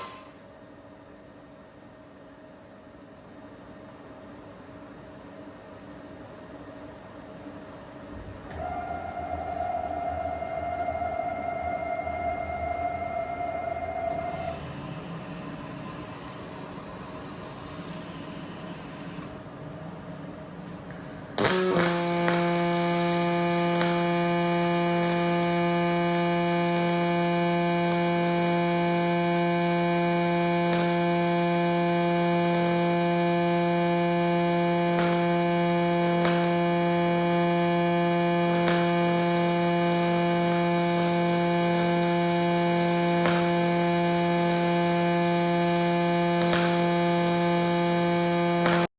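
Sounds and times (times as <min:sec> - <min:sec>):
welding arc buzz: 0:00.0 - 0:00.4, 0:08.6 - 0:19.5, 0:20.9 - 0:48.9.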